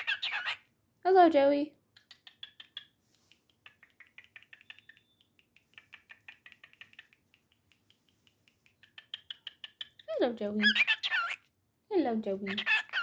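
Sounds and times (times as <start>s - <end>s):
bird chirps and clicks: 1.9s - 10.1s.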